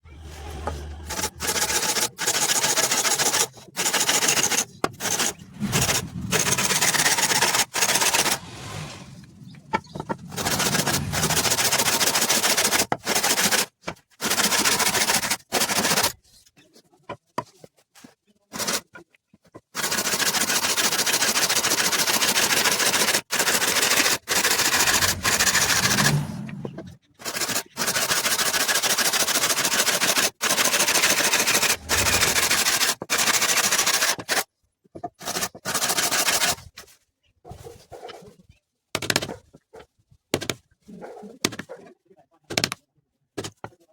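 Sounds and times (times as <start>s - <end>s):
power tools cutting wood: 0.2s - 13.5s, 23.8s - 27.7s.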